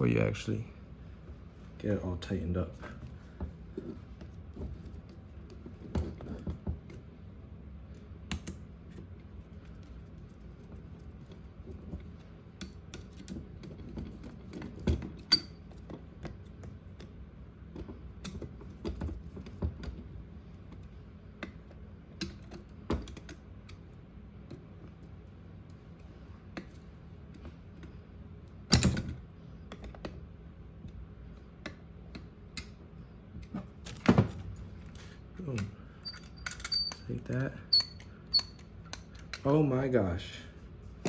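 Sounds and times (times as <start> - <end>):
small metal parts clicking: 35.5 - 37.1, 37.7 - 39.4.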